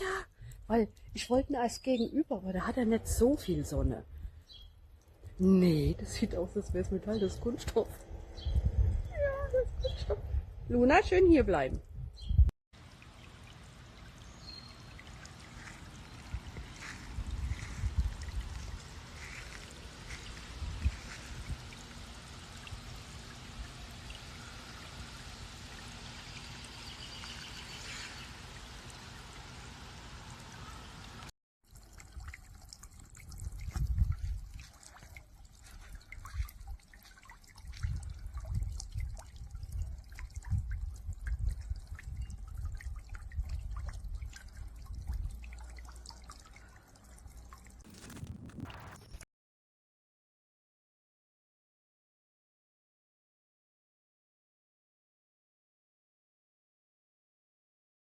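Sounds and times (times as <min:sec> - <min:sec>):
fountain water trickling and splashing: 0:12.8 - 0:48.6.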